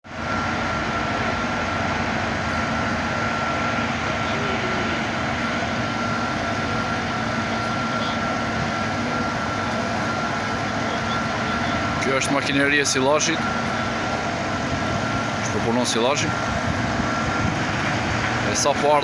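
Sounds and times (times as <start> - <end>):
silage machine running: 0.1 - 19.0.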